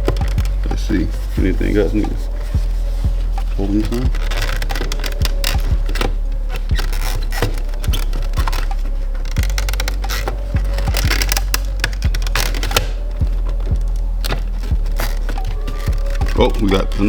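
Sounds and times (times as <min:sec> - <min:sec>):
background music with bass beat: 0:00.0 - 0:17.0
clicks and scrapes of tools: 0:03.4 - 0:17.0.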